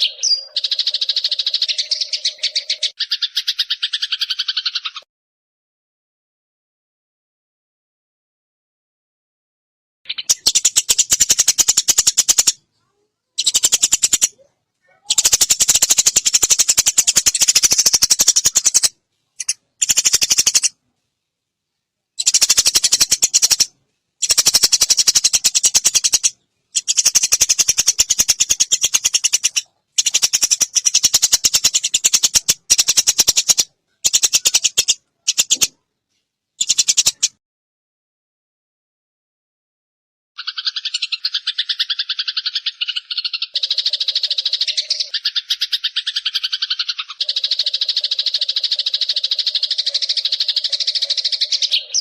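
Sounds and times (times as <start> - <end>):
high rattling bird trill: 0.0 - 5.0, 10.1 - 12.6, 13.4 - 14.4, 15.0 - 20.8, 22.2 - 35.8, 36.6 - 37.4, 40.4 - 52.0.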